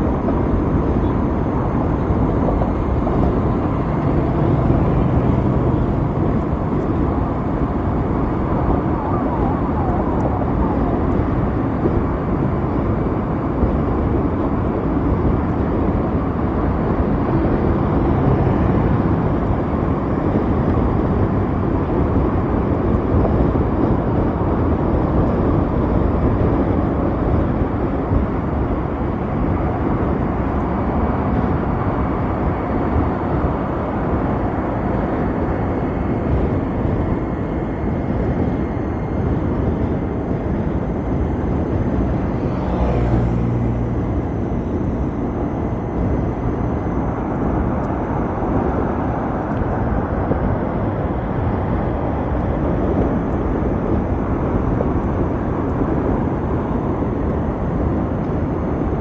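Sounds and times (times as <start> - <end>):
road noise: 0.0 - 59.0
wind buffeting microphone: 0.0 - 59.0
wind rush: 0.0 - 59.0.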